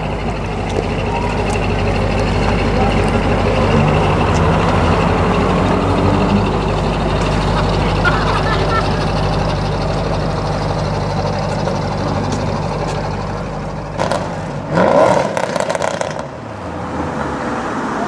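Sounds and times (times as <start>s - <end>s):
exhaust crackles: 0.0s - 17.2s
car engine revving: 0.0s - 18.0s.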